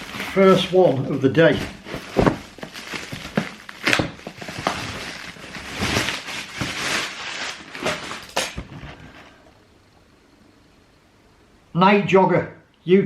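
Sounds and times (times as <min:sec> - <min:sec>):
cardboard box rustling and scraping: 0:00.0 - 0:09.2.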